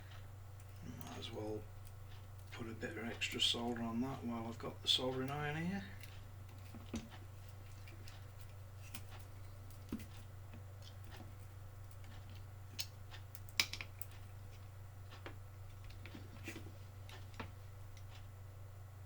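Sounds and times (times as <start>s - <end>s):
steady low hum: 0.0s - 19.0s
small tools clicking and tapping: 11.9s - 14.6s.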